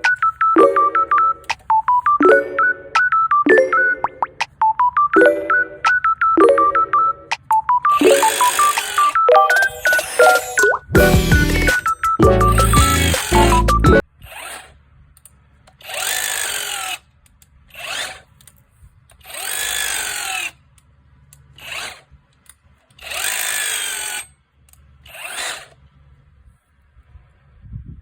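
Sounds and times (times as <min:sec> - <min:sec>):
hammer drill boring into soil: 0:08.0 - 0:10.6, 0:12.4 - 0:13.6, 0:14.2 - 0:14.8, 0:15.7 - 0:17.0, 0:17.7 - 0:18.3, 0:19.2 - 0:20.6, 0:21.6 - 0:22.1, 0:22.9 - 0:24.3, 0:25.1 - 0:25.8.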